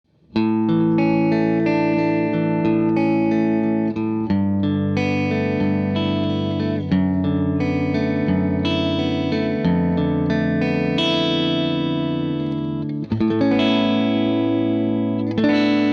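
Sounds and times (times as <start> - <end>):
clean electric guitar chords: 0.3 - 15.9.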